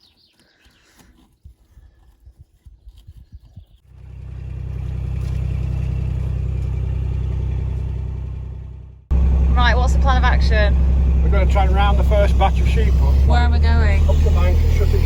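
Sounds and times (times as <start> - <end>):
vehicle engine low hum: 3.9 - 15.0.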